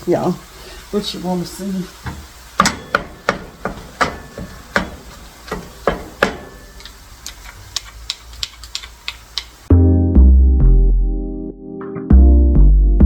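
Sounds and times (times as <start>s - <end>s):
kitchen items knocking and clicking: 2.1s - 9.3s
electronic music with a beat: 9.7s - 13.0s.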